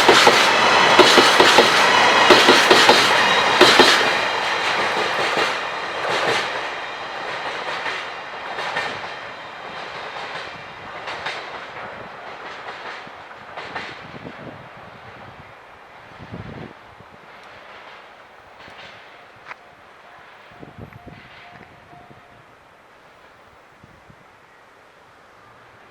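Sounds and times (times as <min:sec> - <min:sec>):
train wheels clattering over joints: 0:00.0 - 0:14.1.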